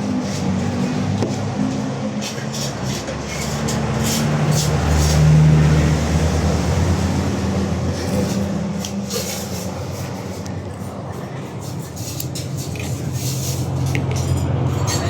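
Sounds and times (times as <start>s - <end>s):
vehicle engine passing by: 0.0s - 11.7s.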